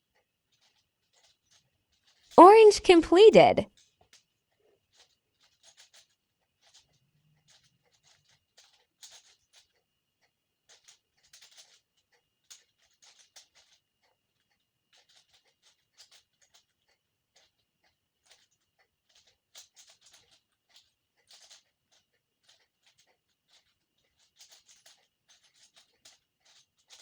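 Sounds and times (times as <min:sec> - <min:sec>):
faint high tone: 0:02.4 - 0:03.6.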